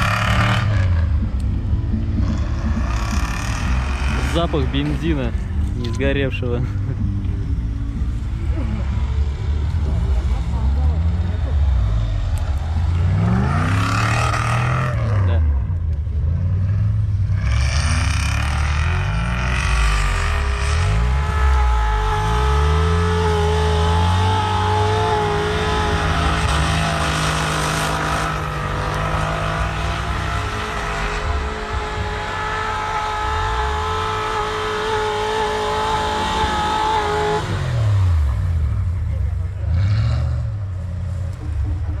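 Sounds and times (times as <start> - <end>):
engine revving hard: 0.0 - 1.1, 12.8 - 15.5, 16.6 - 38.5, 39.6 - 40.6.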